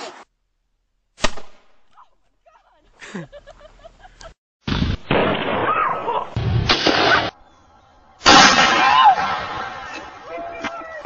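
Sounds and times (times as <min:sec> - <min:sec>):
shotgun blasts: 0:01.2 - 0:01.8, 0:04.7 - 0:07.4, 0:08.2 - 0:09.8.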